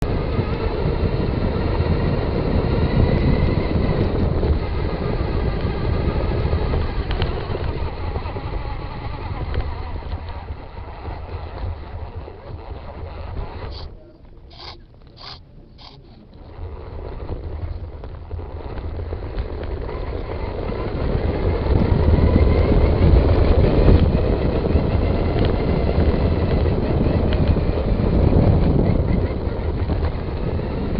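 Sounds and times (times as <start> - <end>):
electric motor whining: 0.0 - 30.9
wind and rolling noise: 0.0 - 30.9
sharp clicks: 11.3 - 16.6.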